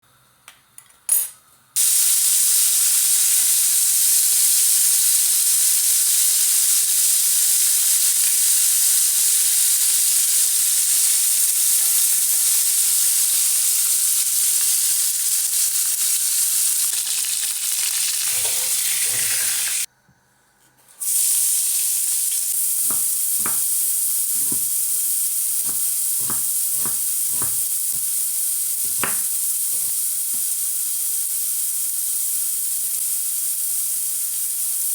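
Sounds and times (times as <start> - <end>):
food sizzling in a pan: 1.8 - 19.9, 21.0 - 34.9
stirring knocks and scrapes: 22.8 - 23.7, 24.4 - 24.8, 25.6 - 28.1.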